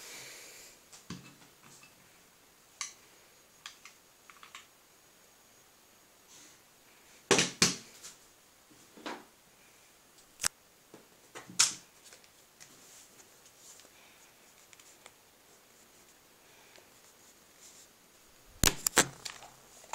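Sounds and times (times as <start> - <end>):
airsoft gun handling clicks: 18.6 - 19.5.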